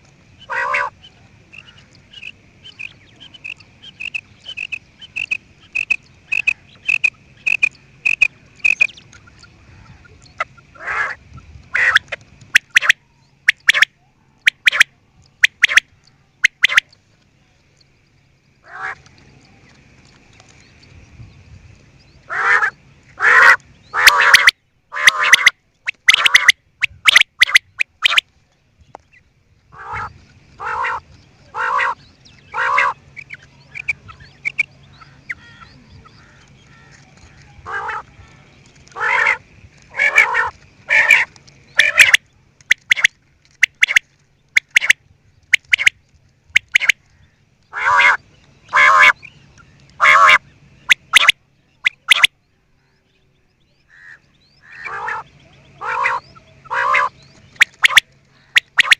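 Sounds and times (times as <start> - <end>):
quail calling harshly: 0.4 - 16.9, 18.6 - 19.0, 22.3 - 28.2, 29.7 - 37.0, 37.6 - 38.3, 38.9 - 44.0, 44.6 - 45.9, 46.6 - 47.0, 47.7 - 49.3, 50.0 - 52.3, 53.9 - 58.9
sharp clicks: 2.8 - 9.2, 11.9 - 13.9, 14.5 - 16.9, 25.2 - 28.2, 41.3 - 46.0, 46.6 - 47.1, 50.9 - 52.3, 57.5 - 58.9.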